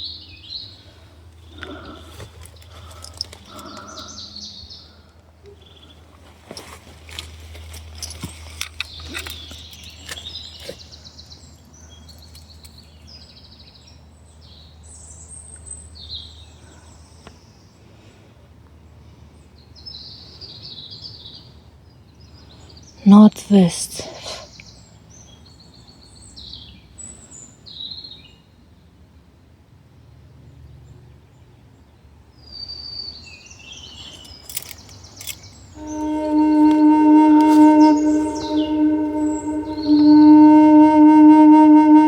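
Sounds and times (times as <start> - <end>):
small birds chirping: 0.0 - 17.8, 19.5 - 28.4, 32.4 - 36.0
low rumble of wind: 0.0 - 23.4, 24.5 - 42.0.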